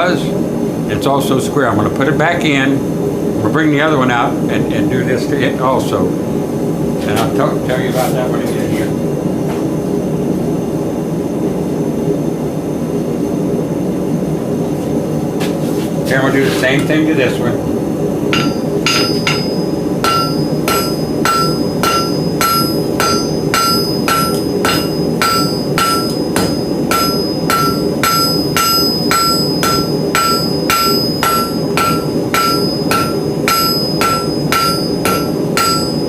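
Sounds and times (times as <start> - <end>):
steady low hum: 0.0 - 36.0
hammer striking steel on anvil: 18.3 - 36.0.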